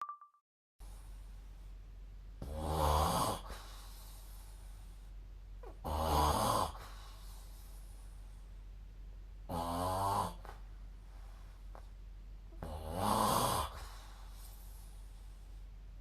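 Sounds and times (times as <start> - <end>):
person snoring: 2.4 - 3.6, 5.8 - 7.0, 9.5 - 10.5, 12.6 - 14.0
quiet breathing: 3.4 - 5.8, 6.6 - 8.8, 10.3 - 12.7, 13.4 - 16.0.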